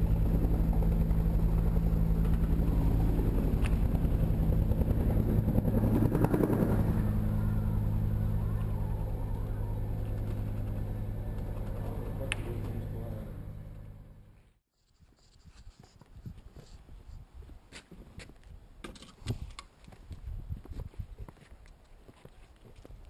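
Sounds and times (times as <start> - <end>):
engine running with fast pulse: 0.0 - 14.6.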